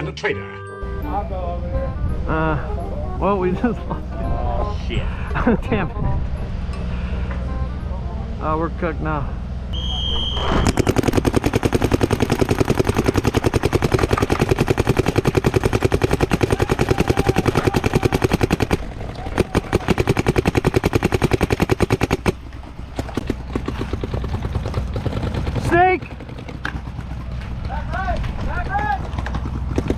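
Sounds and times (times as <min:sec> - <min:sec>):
paintball marker firing: 0:10.5 - 0:25.1, 0:29.2 - 0:29.9.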